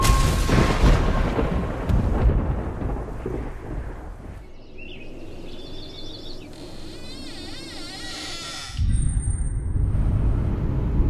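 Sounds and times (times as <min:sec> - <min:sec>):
deep thunder-like rumble: 0:00.0 - 0:04.6, 0:08.8 - 0:11.0.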